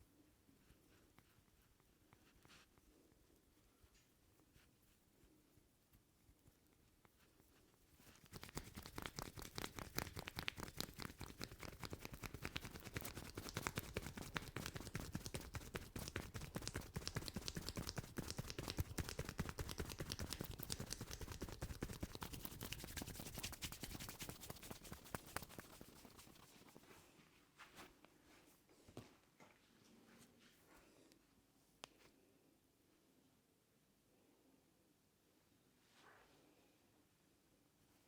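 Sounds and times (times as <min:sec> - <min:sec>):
rapid tapping of hands on head: 0:08.2 - 0:26.7.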